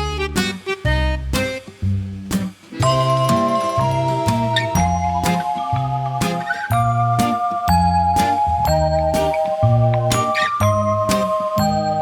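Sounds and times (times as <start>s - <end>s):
low bass: 0.0s - 12.0s
bell-like chiming music: 2.8s - 12.0s.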